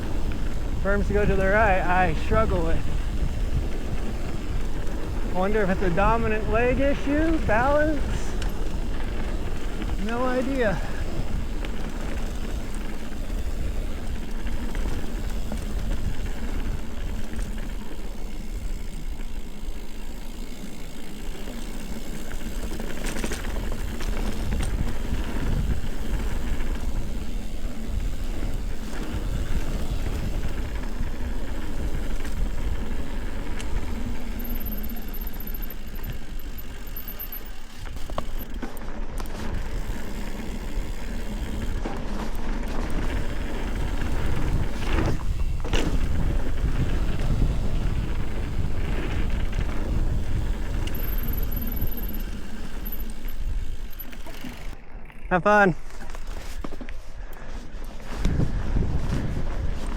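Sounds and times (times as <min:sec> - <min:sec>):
bike tyres on dirt trail: 0:00.0 - 0:59.9
bike knocks and rattles: 0:14.2 - 0:54.7.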